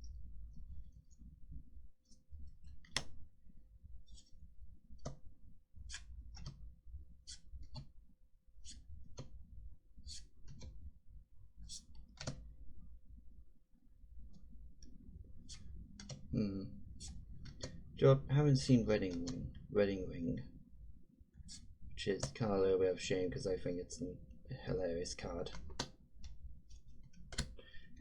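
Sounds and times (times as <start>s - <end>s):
cards clicking and snapping: 12.1s - 12.4s, 25.5s - 26.4s, 27.1s - 27.6s
faint steady hum: 12.5s - 28.0s.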